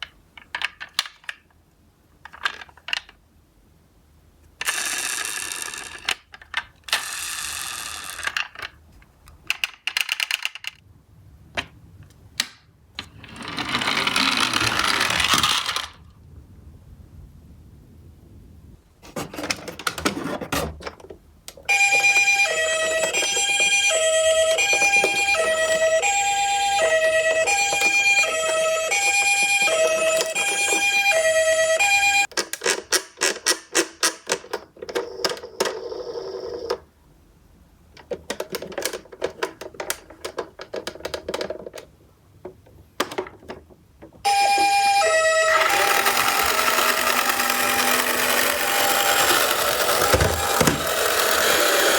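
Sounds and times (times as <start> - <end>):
toy cars clattering down a slope: 4.6 - 8.8, 13.1 - 16.0, 44.3 - 51.9
ambulance two-tone siren: 21.7 - 32.3, 44.3 - 51.9.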